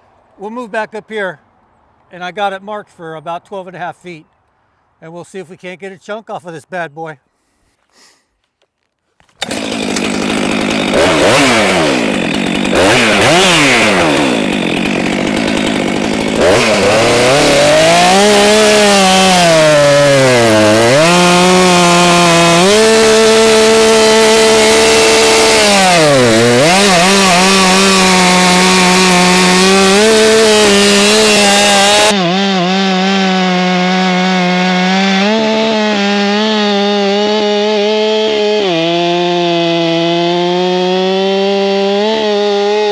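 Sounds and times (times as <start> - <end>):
chainsaw cutting log: 9.2 - 42.9.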